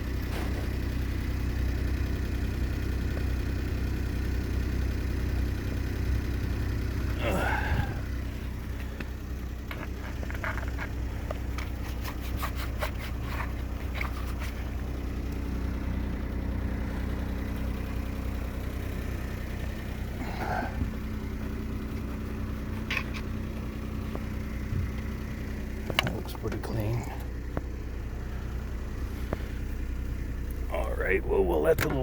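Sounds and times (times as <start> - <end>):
car engine idling: 0.0 - 32.0
clicks and scrapes of handling: 8.8 - 15.4, 21.9 - 24.3.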